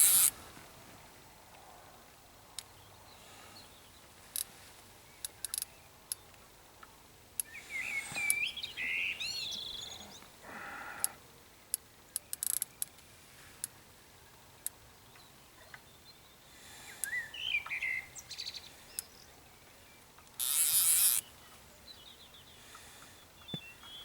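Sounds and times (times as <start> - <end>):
sharp clicks: 0.0 - 0.3
songbird singing: 2.4 - 24.0.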